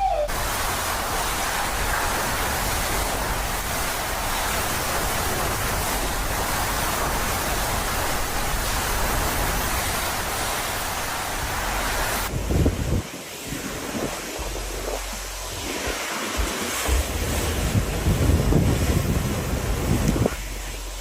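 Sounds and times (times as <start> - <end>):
driving rain: 0.0 - 21.0
storm wind roaring: 0.0 - 21.0
low rumble: 12.3 - 21.0.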